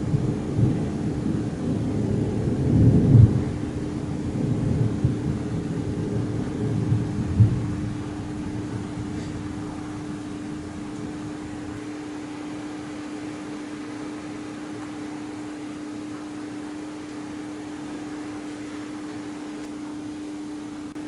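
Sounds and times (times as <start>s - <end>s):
low thunder rumble: 0.0s - 13.5s
mid-pitched hum: 0.0s - 21.0s
steady hiss: 0.0s - 21.0s.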